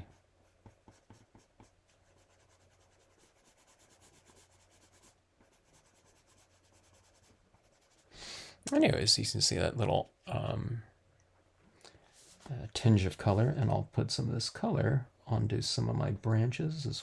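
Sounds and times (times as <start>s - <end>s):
colored pencil scratching: 0.0s - 8.1s.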